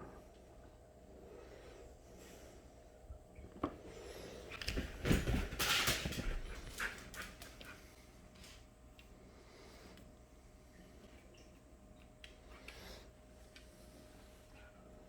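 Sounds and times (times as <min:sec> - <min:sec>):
dog scuffling: 0:04.6 - 0:07.9.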